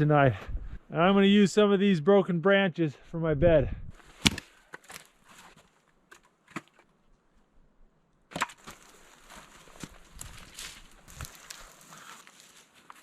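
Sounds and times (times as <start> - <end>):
wood cracking and rustling: 8.3 - 13.0.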